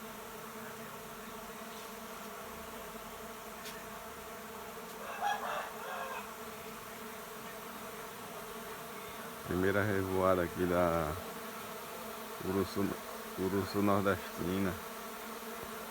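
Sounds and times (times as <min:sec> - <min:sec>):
bees buzzing: 0:00.0 - 0:15.9.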